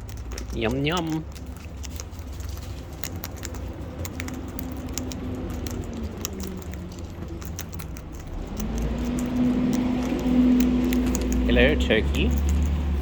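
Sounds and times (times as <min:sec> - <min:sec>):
birds pecking at food: 0:00.0 - 0:13.0
steady low hum: 0:00.0 - 0:13.0
low rumble: 0:03.4 - 0:13.0.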